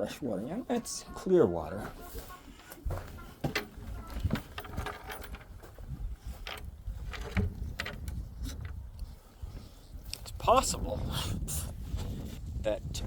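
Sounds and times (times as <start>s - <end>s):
light clicks and knocks: 2.9s - 8.8s.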